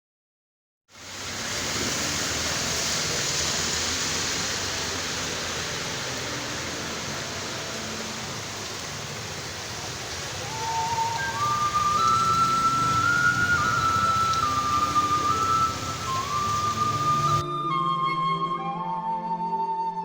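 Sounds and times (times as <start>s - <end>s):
heavy rain: 0.9s - 17.4s
music with whistle-like notes: 10.3s - 20.0s.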